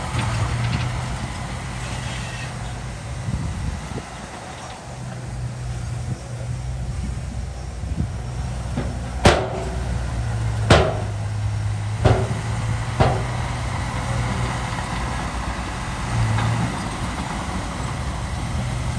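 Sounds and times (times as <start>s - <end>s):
bulldozer diesel engine running: 0.0s - 18.9s
sharp metallic clanks: 8.7s - 13.7s.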